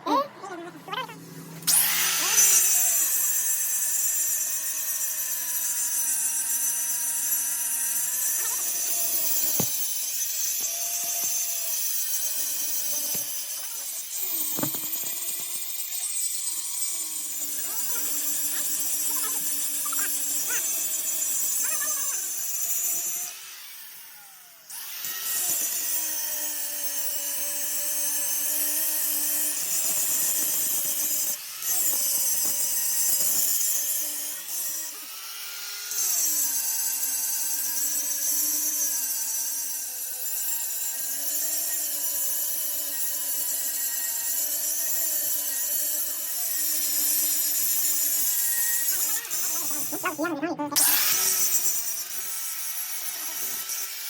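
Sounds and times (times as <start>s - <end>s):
power saw cutting with whine: 0.8s - 54.0s.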